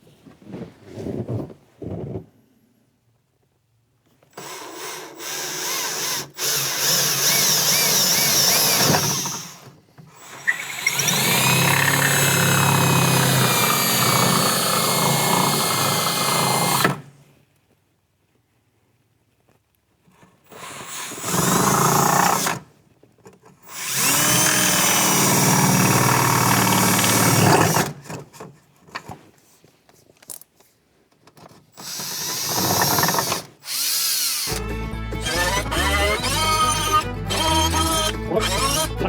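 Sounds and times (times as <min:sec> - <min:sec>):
electric drill boring through panel: 0:04.4 - 0:17.0, 0:20.5 - 0:22.6, 0:23.6 - 0:28.2, 0:31.8 - 0:39.0.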